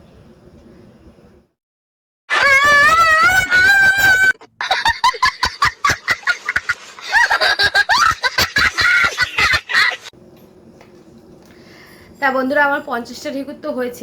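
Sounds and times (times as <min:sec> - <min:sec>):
woman giggling: 0:04.6 - 0:10.1.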